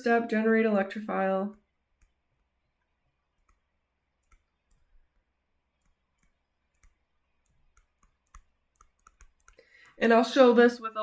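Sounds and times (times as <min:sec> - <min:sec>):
faint clicks: 0:05.8 - 0:10.0.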